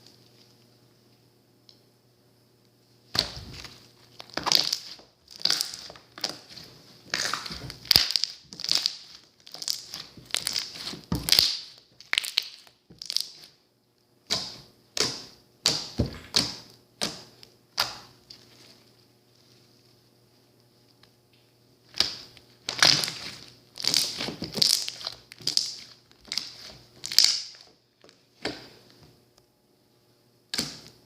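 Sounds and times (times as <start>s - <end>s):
slime squelching by hand: 3.1s - 13.6s, 21.9s - 27.7s.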